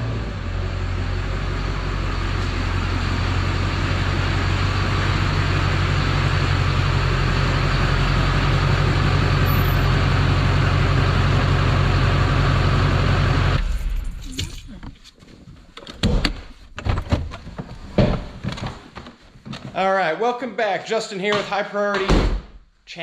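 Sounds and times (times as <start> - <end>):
pickup truck engine idling: 0.5 - 13.7.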